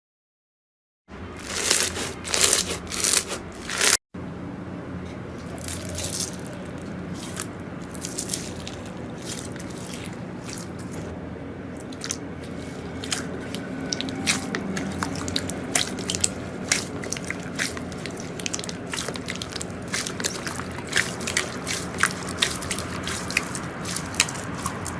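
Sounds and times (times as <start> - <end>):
steady low hum: 1.1 - 24.9.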